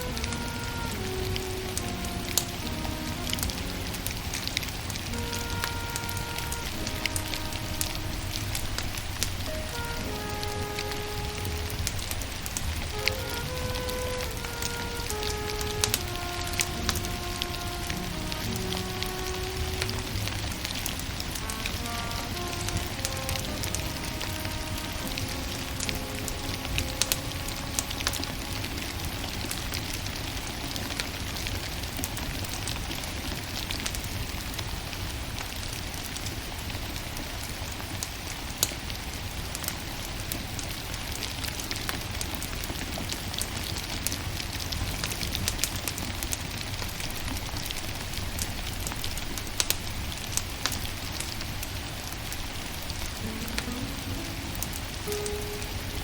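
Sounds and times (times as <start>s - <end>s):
fire hiss and low rumble: 0.0s - 56.0s
wood fire crackling and popping: 0.0s - 56.0s.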